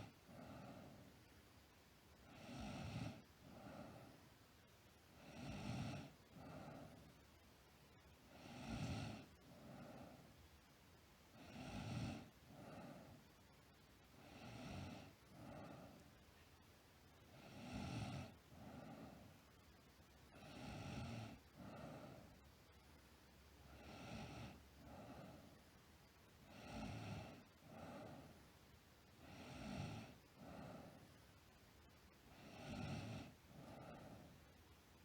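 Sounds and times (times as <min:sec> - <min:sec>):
girl snoring: 0:02.3 - 0:04.1, 0:05.2 - 0:07.0, 0:08.3 - 0:10.2, 0:11.4 - 0:13.2, 0:14.2 - 0:16.0, 0:17.4 - 0:19.2, 0:20.4 - 0:22.2, 0:23.8 - 0:25.4, 0:26.4 - 0:28.4, 0:29.2 - 0:31.0, 0:32.3 - 0:34.4.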